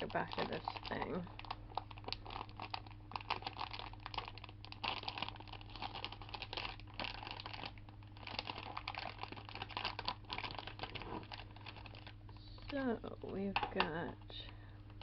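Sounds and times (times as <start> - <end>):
plastic packaging crinkling: 0.0 - 15.0.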